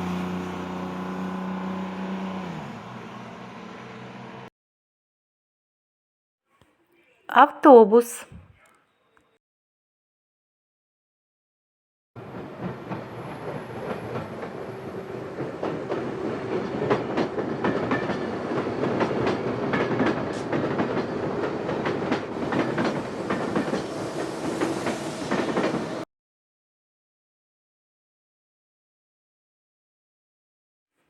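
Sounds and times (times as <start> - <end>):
train wheels clattering over rails: 12.2 - 26.0.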